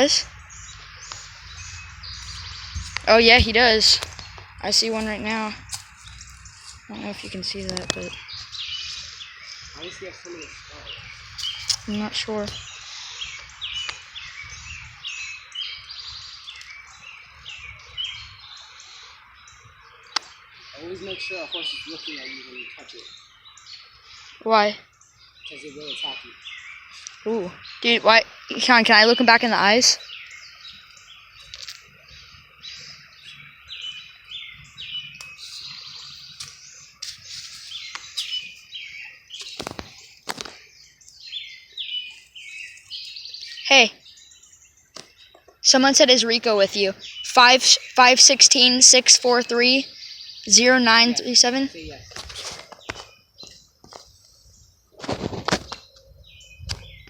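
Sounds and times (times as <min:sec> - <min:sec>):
small birds chirping: 0:00.0 - 0:57.0
sharp clicks: 0:11.4 - 0:12.6.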